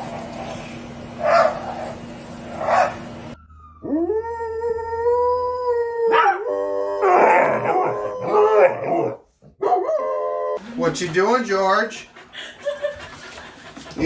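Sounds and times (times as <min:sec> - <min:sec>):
dog howling: 0:02.6 - 0:10.6.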